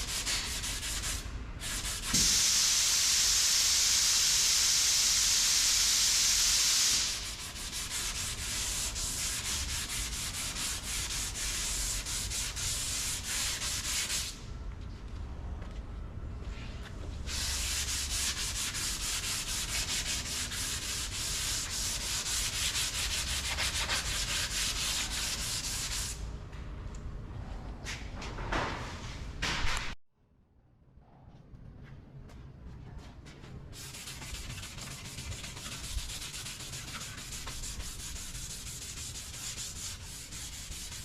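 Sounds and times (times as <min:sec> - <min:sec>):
sanding filler on car panel: 0:00.0 - 0:14.4, 0:17.3 - 0:26.2, 0:33.8 - 0:41.0
steady hiss: 0:02.1 - 0:07.6.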